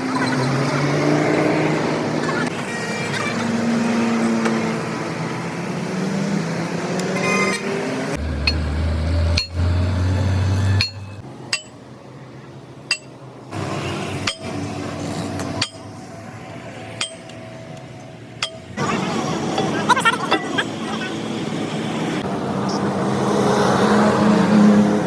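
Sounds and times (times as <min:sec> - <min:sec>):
metal tools striking machine parts: 0:09.4 - 0:09.6, 0:10.8 - 0:11.8, 0:12.9 - 0:13.2, 0:14.2 - 0:14.6, 0:15.6 - 0:15.9, 0:17.0 - 0:17.4, 0:18.4 - 0:18.8.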